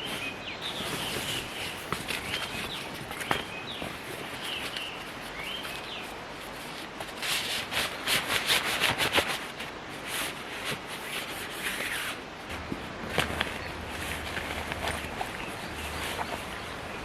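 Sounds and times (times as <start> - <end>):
small birds chirping: 0.0 - 6.9, 11.6 - 17.0
rustling handling noises: 0.0 - 17.0.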